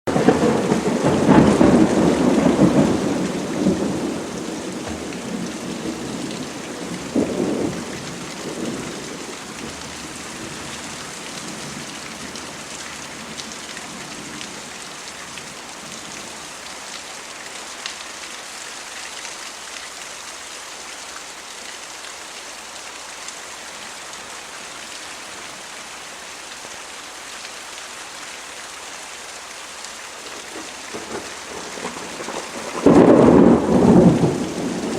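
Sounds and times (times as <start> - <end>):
thunder rolling: 0.1 - 10.7, 30.5 - 34.9
steady rain: 0.1 - 34.9.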